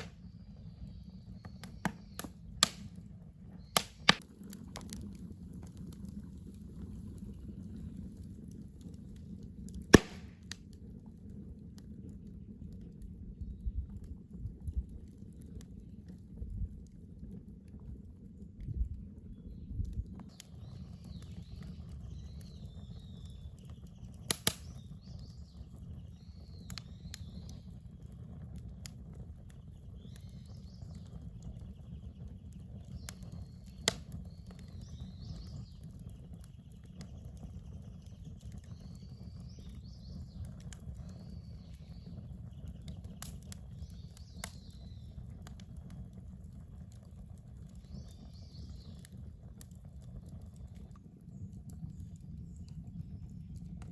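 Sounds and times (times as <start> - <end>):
birds singing: 0.0 - 2.8, 19.3 - 45.9, 46.9 - 49.7
wood fire crackling and popping: 0.0 - 53.9.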